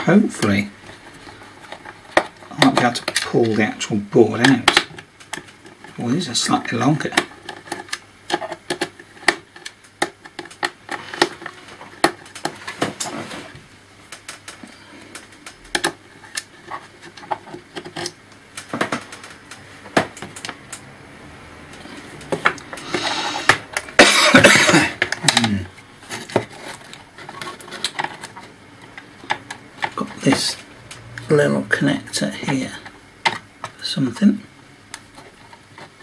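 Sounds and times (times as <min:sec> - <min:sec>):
scraping rustle: 0:10.4 - 0:13.7, 0:25.2 - 0:30.7.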